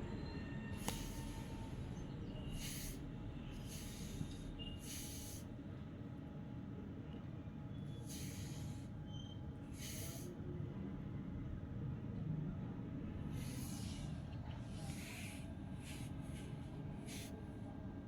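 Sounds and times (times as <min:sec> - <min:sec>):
short hissing bursts: 0:00.8 - 0:01.4, 0:02.5 - 0:03.0, 0:03.6 - 0:05.5, 0:08.0 - 0:08.9, 0:09.7 - 0:10.3, 0:13.3 - 0:17.4.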